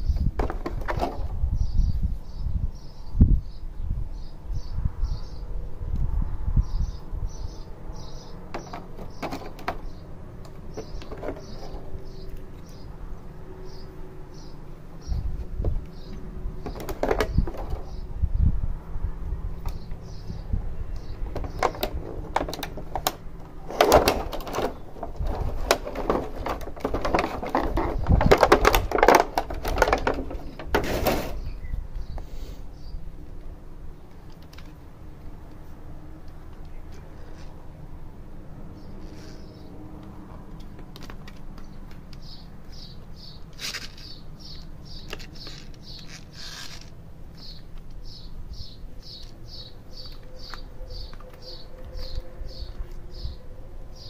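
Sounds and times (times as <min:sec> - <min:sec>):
handling clicks and rustling: 0:08.5 - 0:12.8, 0:20.9 - 0:31.5, 0:34.0 - 0:37.6, 0:39.0 - 0:48.1.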